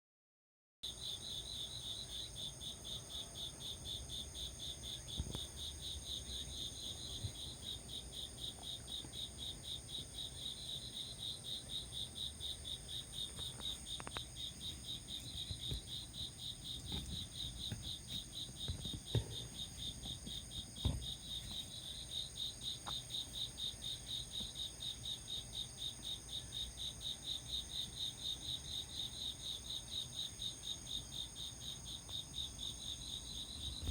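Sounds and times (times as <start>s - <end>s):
crickets chirping: 0.8s - 33.9s
soft knocks: 16.9s - 21.2s.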